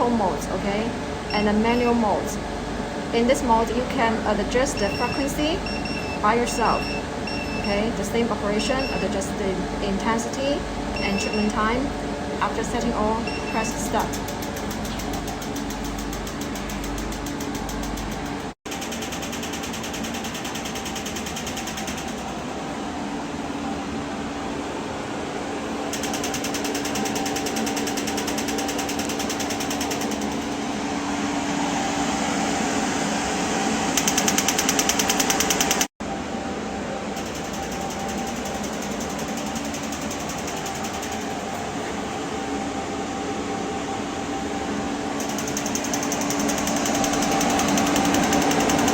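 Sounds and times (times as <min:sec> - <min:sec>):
cooling fan hum: 0:00.0 - 0:48.9
rapid coil clicking: 0:13.6 - 0:22.6, 0:25.9 - 0:30.8, 0:34.0 - 0:35.9, 0:37.2 - 0:41.6, 0:45.2 - 0:48.9.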